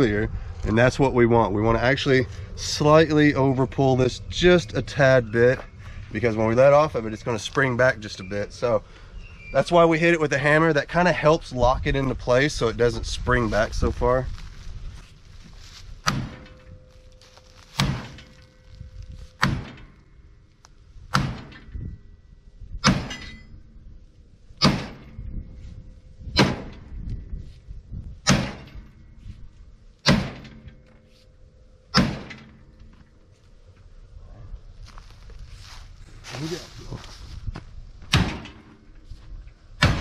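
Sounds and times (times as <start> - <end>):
hammer striking steel frame: 16.0 - 18.5, 19.3 - 20.3, 21.1 - 21.9, 22.8 - 23.7, 24.6 - 25.4, 26.3 - 27.0, 28.2 - 29.1, 30.0 - 31.1, 31.9 - 33.0, 38.1 - 39.0, 39.8 - 40.0.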